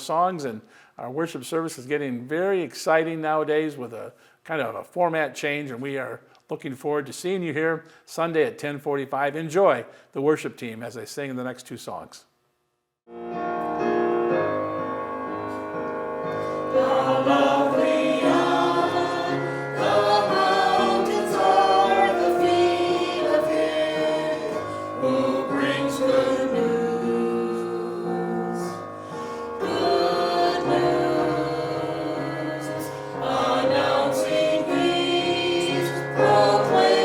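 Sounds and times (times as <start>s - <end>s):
held chords: 13.1s - 37.0s
voices singing together: 16.6s - 37.0s.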